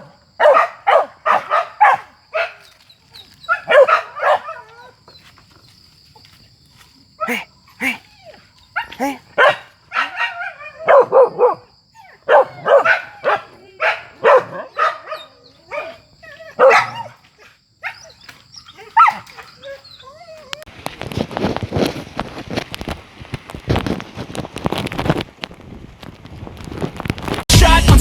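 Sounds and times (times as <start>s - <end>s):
dogs barking and yelping: 0.0s - 5.4s, 7.2s - 20.7s.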